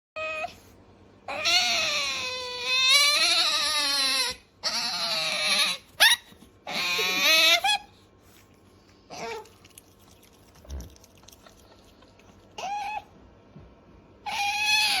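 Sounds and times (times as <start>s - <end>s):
otter whining squeals: 14.2s - 15.0s.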